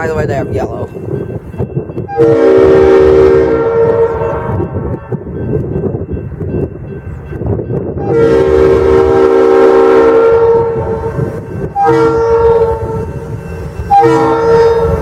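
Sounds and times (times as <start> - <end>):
low rumble of train: 0.0 - 15.0
locomotive air horn blasts: 2.1 - 4.6, 8.0 - 13.2, 13.9 - 15.0.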